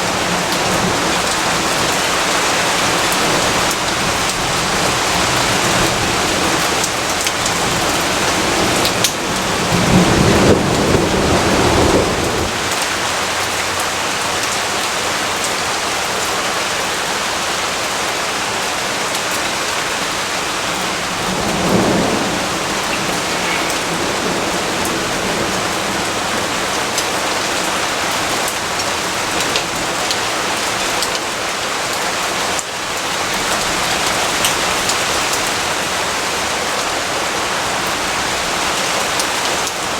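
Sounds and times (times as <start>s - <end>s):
heavy rain falling: 0.0s - 39.9s
low rolling thunder: 0.1s - 13.1s, 20.2s - 27.5s.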